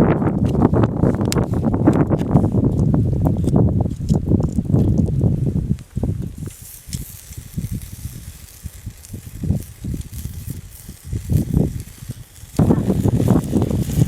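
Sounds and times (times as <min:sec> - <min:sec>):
wind buffeting microphone: 0:00.0 - 0:14.0
meat sizzling on a grill: 0:06.4 - 0:14.0.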